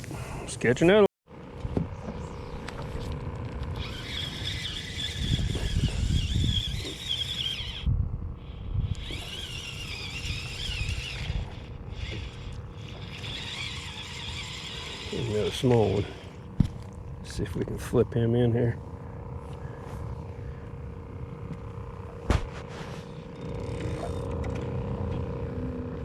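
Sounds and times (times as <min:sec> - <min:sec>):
low hum and rumble: 0:00.0 - 0:26.0
fishing reel whine: 0:01.4 - 0:17.3, 0:23.0 - 0:26.0.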